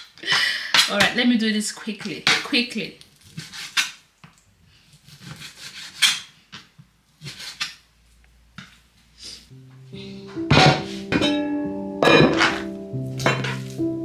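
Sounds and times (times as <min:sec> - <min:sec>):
pots and utensils scraping and knocking: 0:10.5 - 0:13.9.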